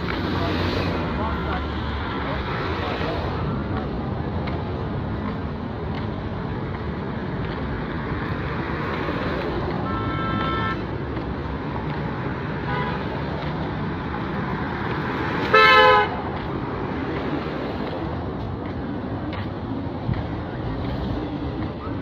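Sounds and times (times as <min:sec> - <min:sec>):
road traffic passing: 0:00.0 - 0:22.0
vehicle horns honking: 0:01.2 - 0:02.3, 0:09.8 - 0:11.0, 0:12.6 - 0:13.2, 0:15.4 - 0:16.2.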